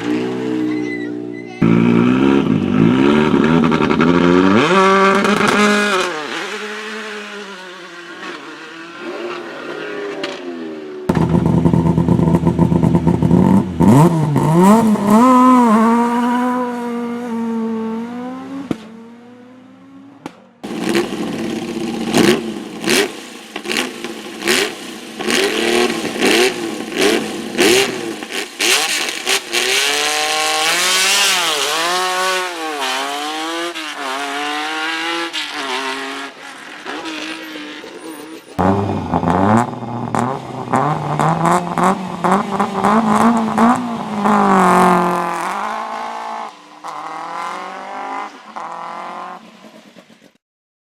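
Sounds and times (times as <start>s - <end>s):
rally car engines revving: 0.0s - 50.3s
exhaust bangs and pops: 11.1s - 16.0s, 18.6s - 18.9s, 20.2s - 29.8s, 38.6s - 46.0s.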